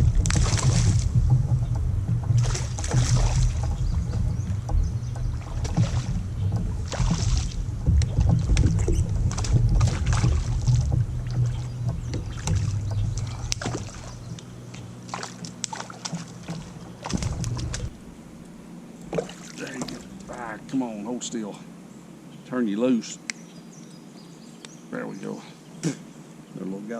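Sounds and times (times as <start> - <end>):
knocks and clicks on kayak: 0.0 - 18.0
low rumble: 0.0 - 21.1.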